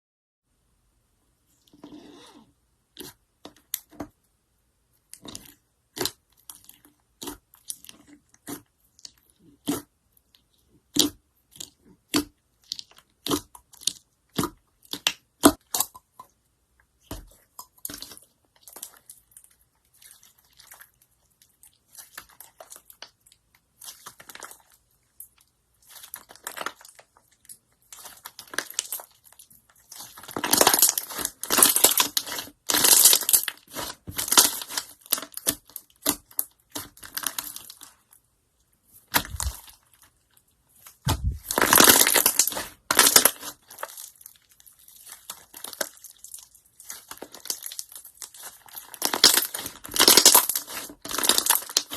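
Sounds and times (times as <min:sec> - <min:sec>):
slime squeezed and poked by hand: 0:29.8 - 0:37.8, 0:41.1 - 0:51.9.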